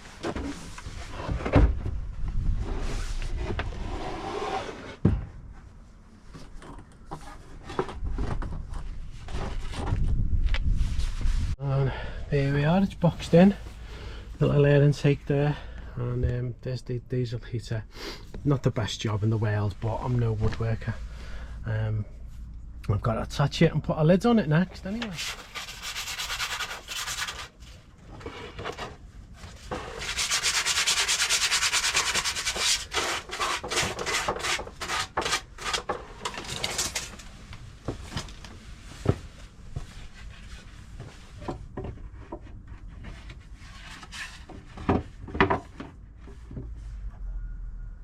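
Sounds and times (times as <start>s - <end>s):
sanding wood: 25.1s - 27.5s, 29.8s - 35.5s.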